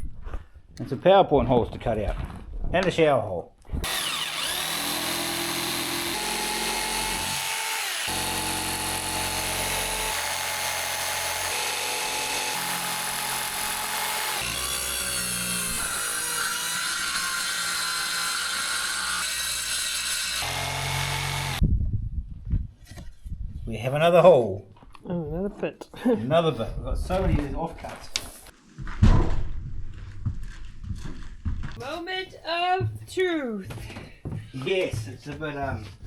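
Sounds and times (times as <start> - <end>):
electric jigsaw cutting: 3.8 - 21.6.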